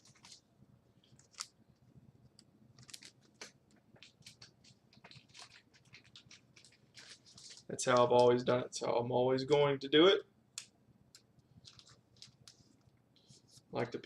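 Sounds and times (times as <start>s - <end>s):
trading cards rustling and clicking: 0.0s - 0.4s, 1.0s - 1.6s, 2.4s - 8.6s, 11.2s - 14.0s.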